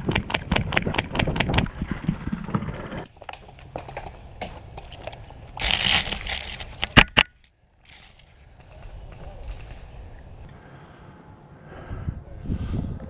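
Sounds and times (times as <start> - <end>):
rustling: 2.0 - 10.5
rapid footsteps on ground: 7.9 - 10.5.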